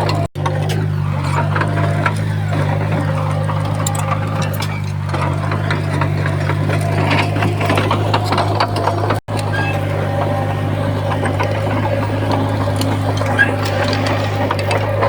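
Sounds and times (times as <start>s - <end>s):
bulldozer diesel engine running: 0.0s - 15.0s.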